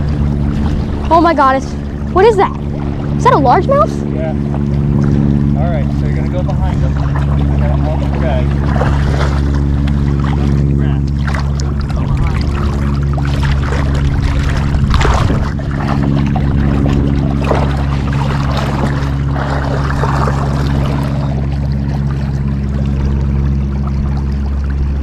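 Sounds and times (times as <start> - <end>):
steady low hum: 0.0 - 25.0
river water rushing and splashing: 6.9 - 25.0.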